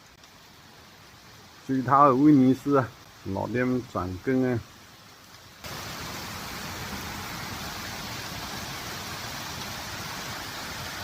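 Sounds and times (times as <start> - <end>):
water rushing: 5.6 - 11.0.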